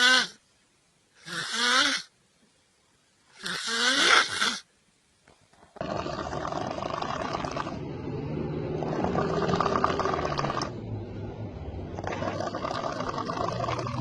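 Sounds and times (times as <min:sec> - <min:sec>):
person snoring heavily: 0:01.2 - 0:02.1, 0:03.4 - 0:04.6, 0:05.8 - 0:10.8, 0:12.0 - 0:14.0.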